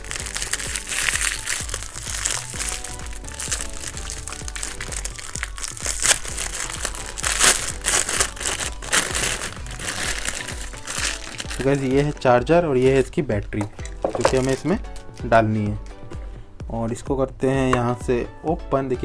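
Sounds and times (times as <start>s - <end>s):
packaging crinkling: 0.0s - 14.7s
background music: 0.0s - 19.0s.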